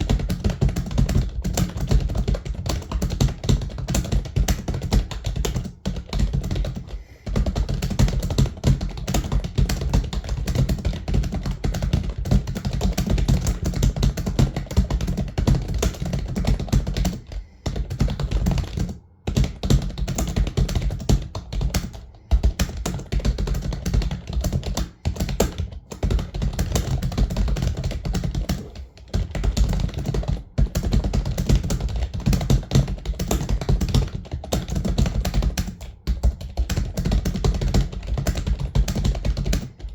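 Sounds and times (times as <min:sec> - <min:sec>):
keyboard typing: 0:00.0 - 0:39.9.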